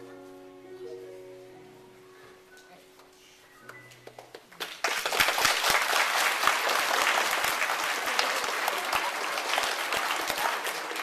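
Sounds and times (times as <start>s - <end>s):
audience applauding: 4.5s - 11.0s.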